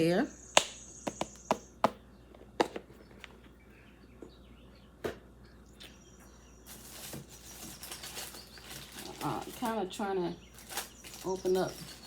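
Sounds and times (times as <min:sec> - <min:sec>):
packaging rustling: 0:06.7 - 0:12.0.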